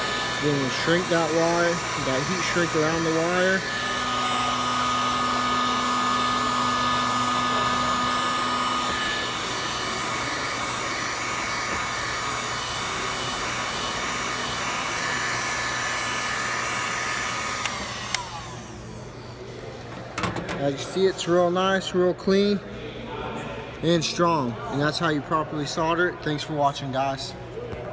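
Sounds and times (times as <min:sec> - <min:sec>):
heat gun blowing: 0:00.0 - 0:19.2
fan winding down: 0:00.0 - 0:20.7.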